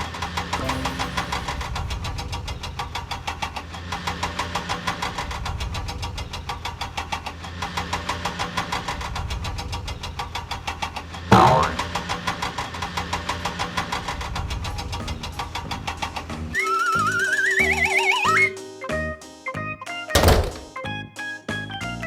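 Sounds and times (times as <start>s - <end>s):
cartoon engine chugging: 11.3s - 12.0s.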